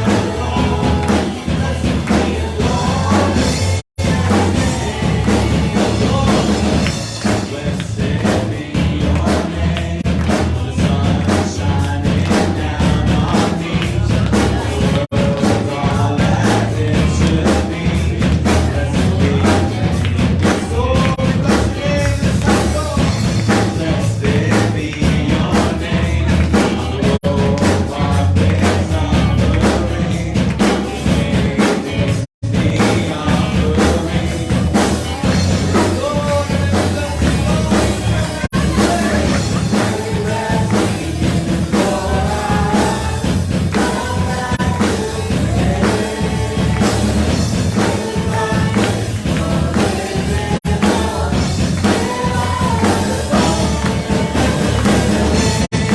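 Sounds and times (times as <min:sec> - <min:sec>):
bass: 0:00.0 - 0:55.9
drum kit: 0:00.0 - 0:55.9
people singing: 0:00.0 - 0:55.9.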